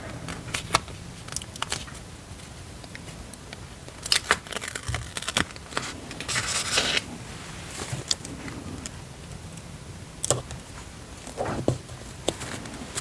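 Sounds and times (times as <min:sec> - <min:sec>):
paper rustling: 0:04.0 - 0:08.7.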